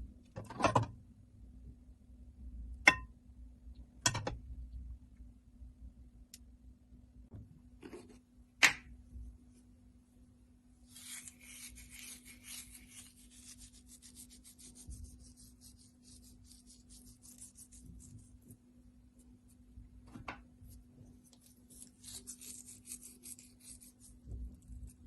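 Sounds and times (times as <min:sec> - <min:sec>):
utensil rasping strokes: 0:10.8 - 0:18.5, 0:21.3 - 0:25.0.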